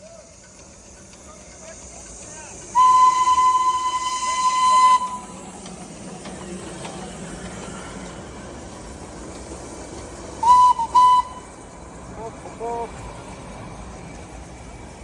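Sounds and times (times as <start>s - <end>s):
train hiss and low hum: 0.0s - 15.0s
high train whistle: 2.7s - 5.3s, 10.4s - 11.5s.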